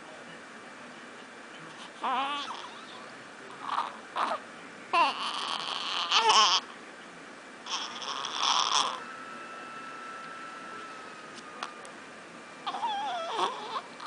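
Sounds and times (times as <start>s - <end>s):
baby cooing and squealing: 2.0s - 3.0s, 5.0s - 6.6s, 7.7s - 9.0s, 12.6s - 13.9s.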